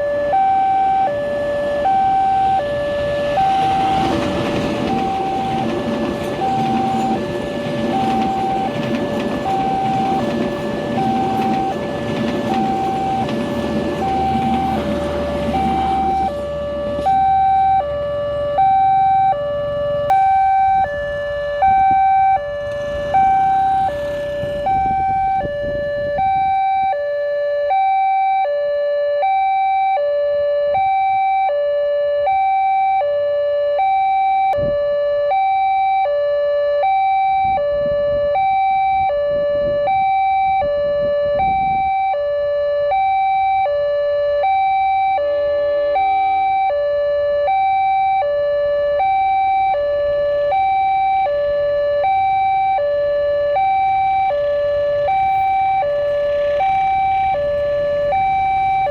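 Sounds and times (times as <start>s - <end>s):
road traffic rumbling: 0.0s - 27.0s, 38.9s - 58.9s
two-tone crossing alarm siren: 0.0s - 58.9s.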